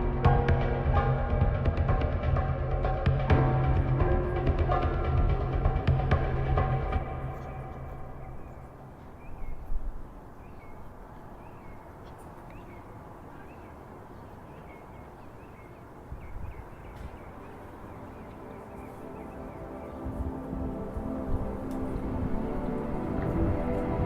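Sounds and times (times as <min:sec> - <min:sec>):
small birds chirping: 0:07.4 - 0:23.0.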